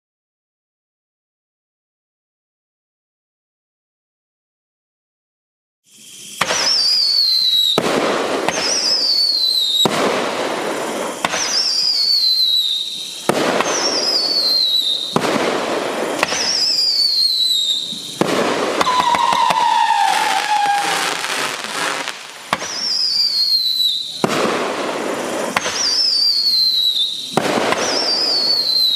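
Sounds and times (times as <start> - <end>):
falling warbling firework whistles: 5.9 - 28.9
firework crackling: 5.9 - 28.9
firework shots: 6.0 - 28.9.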